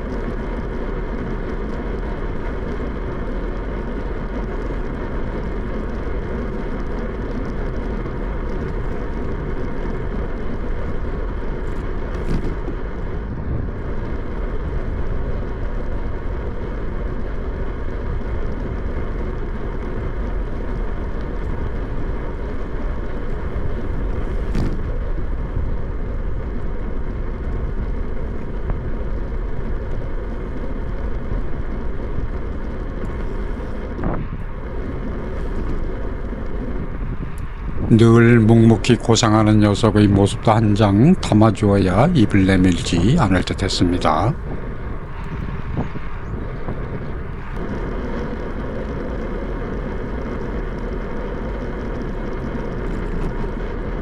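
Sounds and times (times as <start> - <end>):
bicycle rolling noise: 0.0 - 54.0
wind rush: 33.1 - 54.0.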